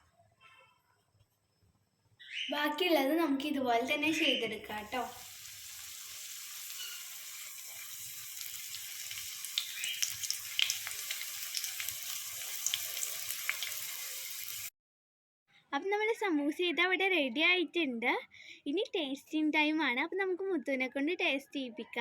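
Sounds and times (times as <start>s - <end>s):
deep-frying sizzle with pops: 4.7s - 14.7s.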